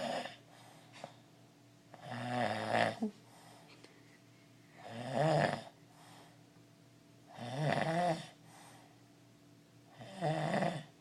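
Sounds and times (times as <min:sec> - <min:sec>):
man snoring: 0:00.0 - 0:00.4, 0:02.0 - 0:03.0, 0:04.8 - 0:05.8, 0:07.3 - 0:08.4, 0:09.9 - 0:10.9
faint breaths: 0:00.0 - 0:01.4, 0:03.2 - 0:04.9, 0:05.7 - 0:06.6, 0:08.3 - 0:09.2.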